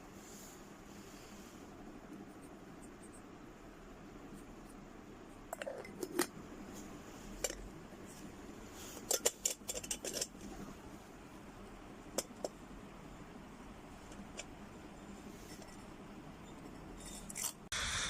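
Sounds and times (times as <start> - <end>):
moka pot metal parts clinking: 5.5 - 6.3, 9.0 - 10.4, 17.0 - 17.6.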